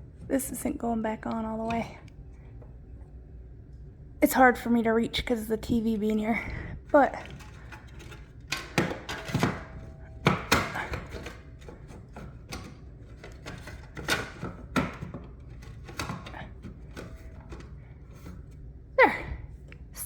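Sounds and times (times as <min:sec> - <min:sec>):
plastic cover knocks and clicks: 0:08.5 - 0:17.2.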